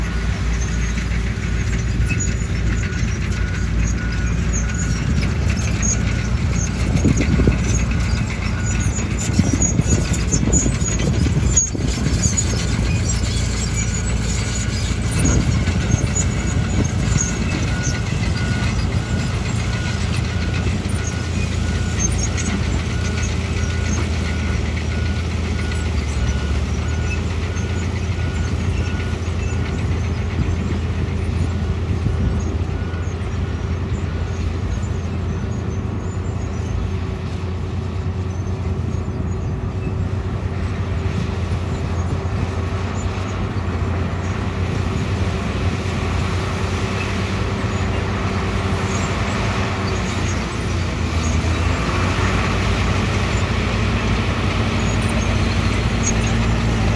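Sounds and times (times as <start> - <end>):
bulldozer diesel engine running: 0.0 - 56.9
reversing alarm beeping: 2.0 - 29.9.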